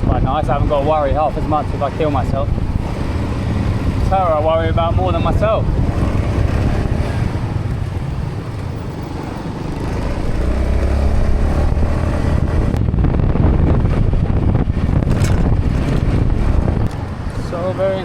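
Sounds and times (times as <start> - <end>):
road noise: 0.0 - 18.0
motor scooter running: 5.6 - 12.8.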